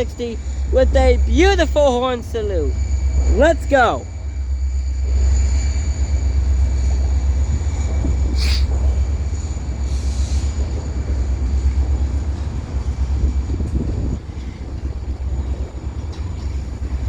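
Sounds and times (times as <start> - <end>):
freight train rumbling past: 0.0 - 17.0
brief hiss: 8.3 - 8.7.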